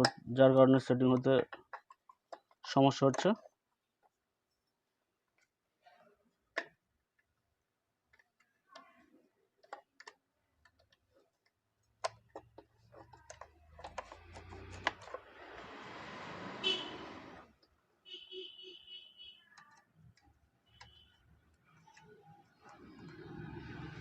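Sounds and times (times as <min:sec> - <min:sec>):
small clicks and taps on parts: 0:01.1 - 0:04.2, 0:08.0 - 0:08.9, 0:09.6 - 0:15.2, 0:19.6 - 0:22.9.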